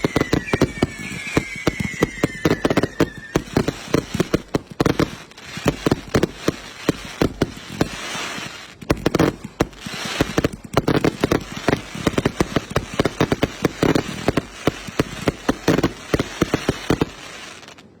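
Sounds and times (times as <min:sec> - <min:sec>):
hissing crackle: 0:00.0 - 0:04.5
firecrackers banging: 0:00.0 - 0:06.4.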